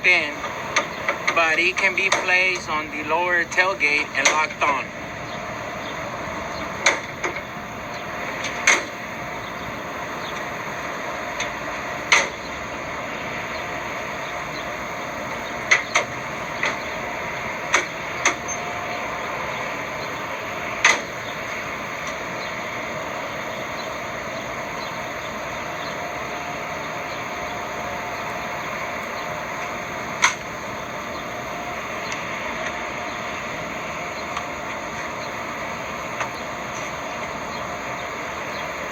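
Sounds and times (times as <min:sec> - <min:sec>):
steady background noise: 0:00.0 - 0:38.9
sharp knocks and clunks: 0:00.8 - 0:02.5.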